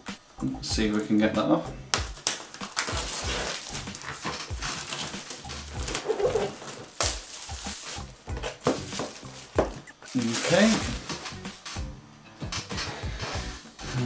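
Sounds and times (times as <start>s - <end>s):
plastic shrink-wrap crinkling: 1.9s - 11.8s.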